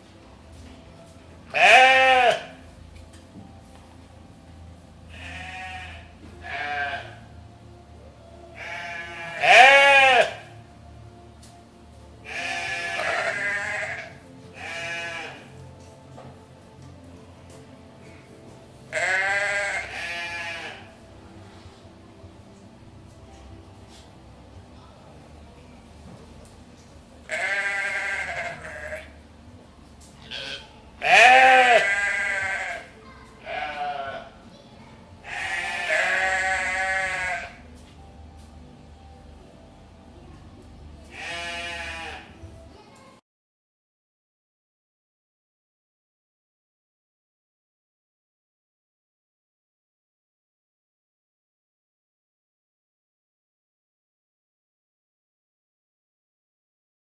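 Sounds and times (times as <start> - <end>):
goats bleating: 1.5 - 2.5, 5.1 - 7.2, 8.6 - 10.4, 12.2 - 15.5, 18.9 - 20.9, 27.3 - 29.1, 30.2 - 34.3, 35.2 - 37.6, 41.1 - 42.4.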